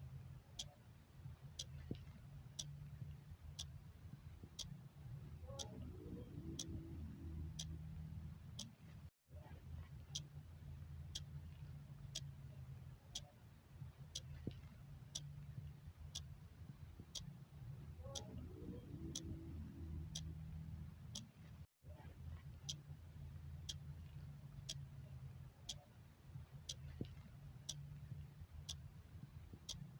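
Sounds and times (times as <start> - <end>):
low steady hum: 0.0 - 29.9
clock ticking: 1.6 - 2.9, 4.4 - 4.8, 5.5 - 8.0, 14.2 - 15.4, 18.1 - 20.5, 26.7 - 28.0, 29.5 - 29.9.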